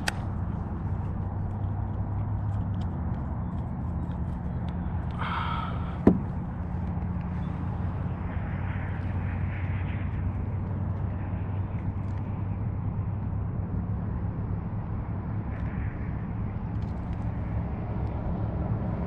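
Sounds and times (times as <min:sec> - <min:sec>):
low droning hum: 0:00.0 - 0:19.0
faint call: 0:05.1 - 0:06.4.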